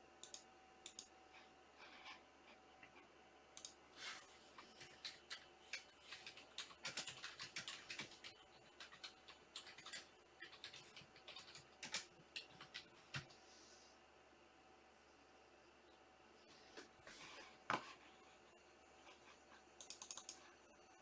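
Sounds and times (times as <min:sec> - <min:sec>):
typing on computer keyboard: 0:00.2 - 0:01.1, 0:04.6 - 0:13.3, 0:19.8 - 0:20.4.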